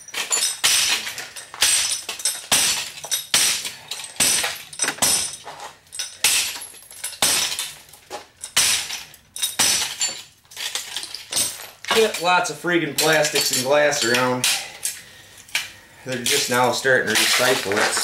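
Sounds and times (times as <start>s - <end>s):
clinking glass shards: 0.0s - 12.3s, 13.0s - 18.0s
television being smashed: 0.1s - 5.4s, 6.2s - 7.8s, 8.5s - 12.3s.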